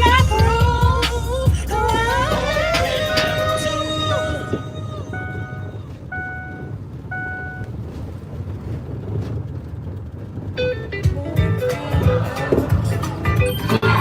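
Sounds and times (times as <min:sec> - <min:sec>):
music: 0:00.0 - 0:04.6, 0:11.0 - 0:14.0
car cabin road noise: 0:00.0 - 0:14.0
electronic beeps: 0:04.4 - 0:07.7, 0:13.3 - 0:14.0.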